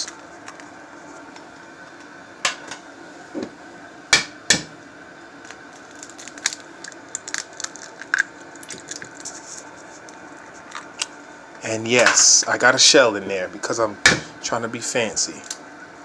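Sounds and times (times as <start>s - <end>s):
egg cracking against bowl: 4.2s - 4.8s, 5.4s - 9.4s.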